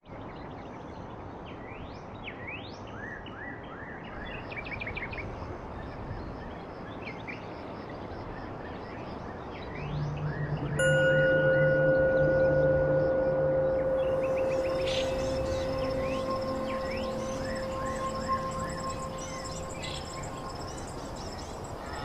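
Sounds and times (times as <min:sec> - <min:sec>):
background hiss: 0:09.0 - 0:22.0
birds calling: 0:09.4 - 0:22.0.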